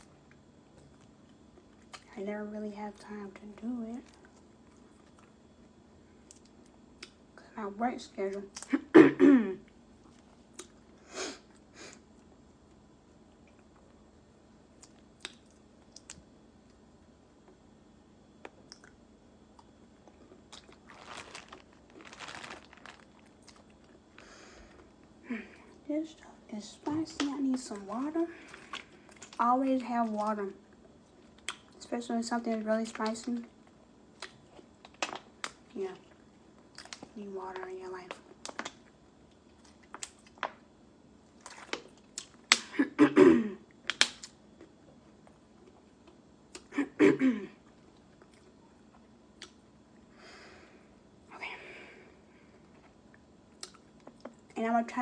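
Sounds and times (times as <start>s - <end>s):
crunchy chewing of food: 0.0s - 2.1s, 4.0s - 7.2s, 9.7s - 14.1s, 18.3s - 25.8s, 27.1s - 31.8s, 32.9s - 37.2s, 38.1s - 42.6s, 43.7s - 46.7s, 47.6s - 50.1s, 52.5s - 54.6s
chewing: 4.0s - 5.4s, 18.5s - 24.0s
mouth smacks and wet clicks: 14.8s - 16.2s, 49.4s - 49.6s, 53.6s - 54.3s.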